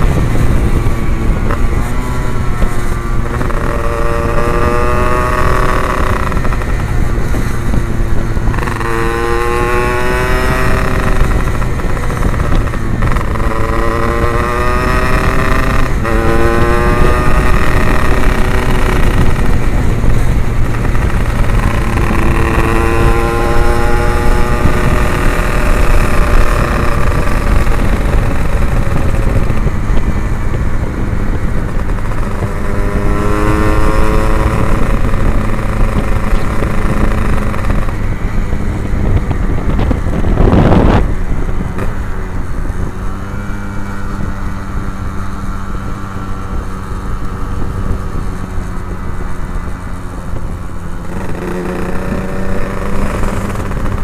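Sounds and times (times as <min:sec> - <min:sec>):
two-stroke motorcycle accelerating: 0:00.0 - 0:54.0.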